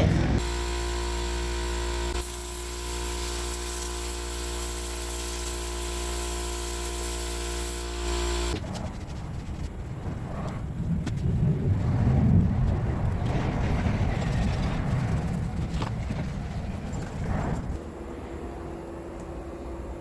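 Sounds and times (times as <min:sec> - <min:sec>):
vacuum motor humming: 0:00.0 - 0:08.7.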